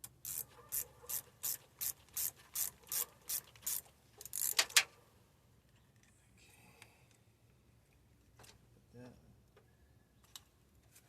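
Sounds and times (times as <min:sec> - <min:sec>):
ratchet wrench clicking: 0:00.0 - 0:04.7.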